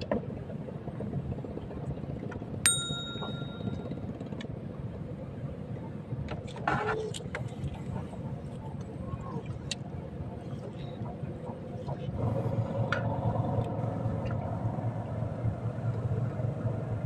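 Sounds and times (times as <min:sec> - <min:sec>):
small metal bell ringing: 0:02.7 - 0:03.9.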